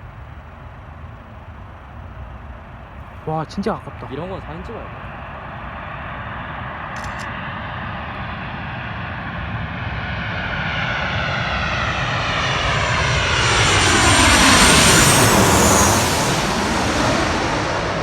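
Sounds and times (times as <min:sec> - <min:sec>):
airplane passing overhead: 0:00.0 - 0:18.0.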